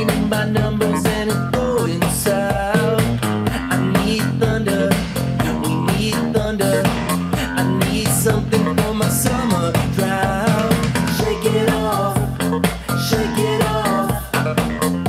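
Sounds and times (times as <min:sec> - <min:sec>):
disco-funk music from speaker: 0:00.0 - 0:15.0.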